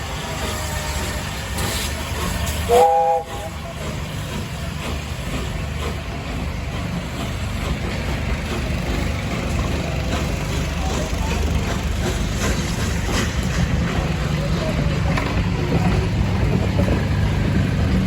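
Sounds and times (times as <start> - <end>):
train rumbling: 0.0 - 18.0
steam locomotive whistle: 2.6 - 3.5.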